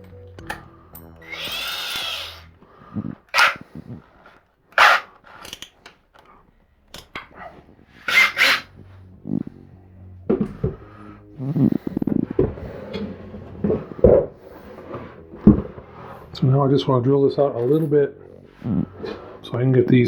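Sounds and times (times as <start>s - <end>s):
power drill whine: 1.2s - 2.6s, 3.3s - 5.6s, 8.0s - 8.7s.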